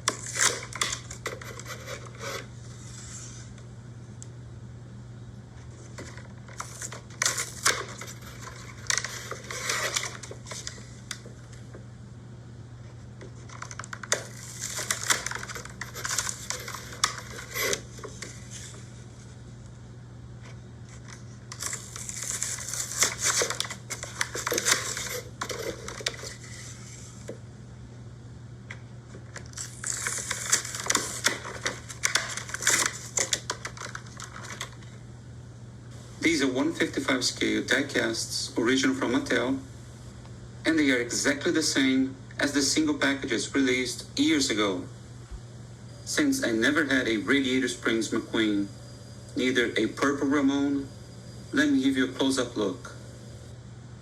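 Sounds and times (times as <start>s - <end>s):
plastic and card crinkling: 0.1s - 2.5s, 5.7s - 11.3s, 13.3s - 18.9s, 20.9s - 27.1s, 29.3s - 35.0s.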